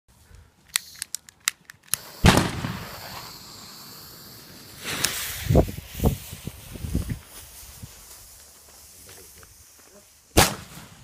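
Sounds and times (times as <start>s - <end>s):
firework cracks: 0.8s - 11.0s
firework hiss: 1.9s - 11.0s
loud firework bang: 2.2s - 3.4s, 10.4s - 11.0s.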